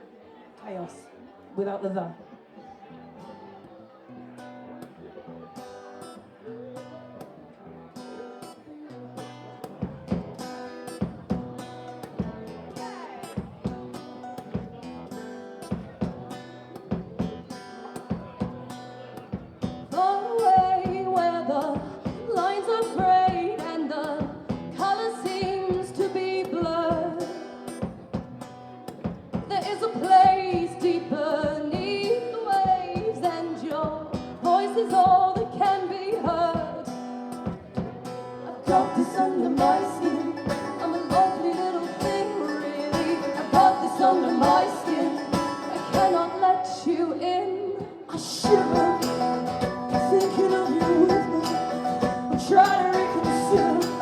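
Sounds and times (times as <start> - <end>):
strummed acoustic guitar: 2.9 - 54.0
women singing: 19.9 - 27.4, 29.4 - 36.8, 38.4 - 54.0.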